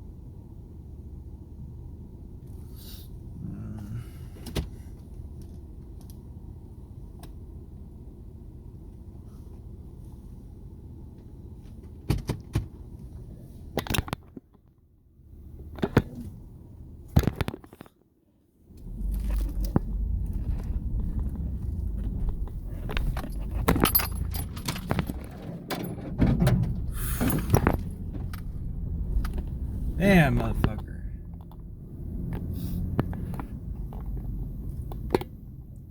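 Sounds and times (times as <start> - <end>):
low engine hum in cabin: 0.0 - 17.2, 18.1 - 35.9
low rumble over rough ground: 18.6 - 35.9
keys rattling and jangling: 19.0 - 29.5
clicks and knocks: 19.1 - 29.6.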